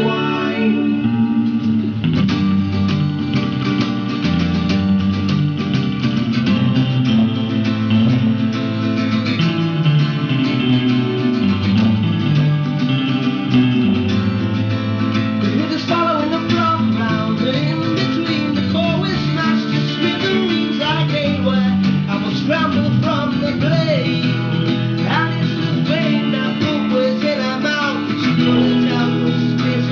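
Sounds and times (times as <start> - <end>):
bass line: 0.0 - 29.9
strummed guitars: 0.0 - 29.9
wavering melody line: 6.5 - 15.4.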